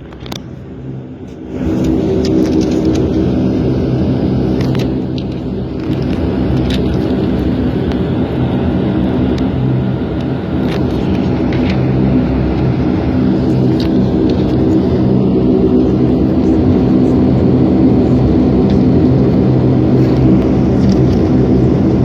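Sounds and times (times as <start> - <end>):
turboprop engines droning: 0.0 - 22.0.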